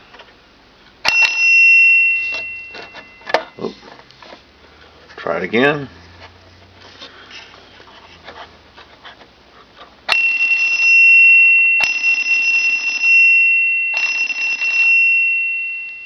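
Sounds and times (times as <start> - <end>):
doorbell clapper rattling: 10.1 - 15.2.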